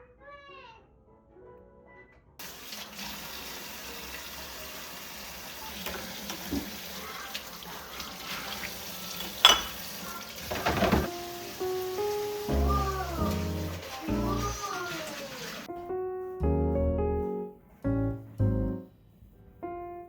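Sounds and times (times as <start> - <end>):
tap water running into sink: 2.4 - 15.7
items clattering: 9.1 - 11.2.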